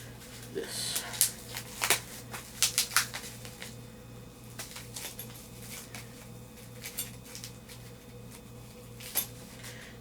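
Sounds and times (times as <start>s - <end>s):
steady low hum: 0.0s - 10.0s
packaging rustling and clicking: 0.3s - 3.8s, 4.6s - 8.0s.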